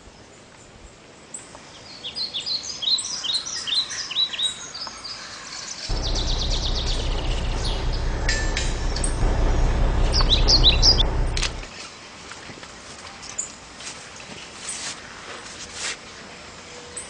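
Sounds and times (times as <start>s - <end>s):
birds chirping: 5.9s - 11.7s
low rushing noise: 5.9s - 11.7s.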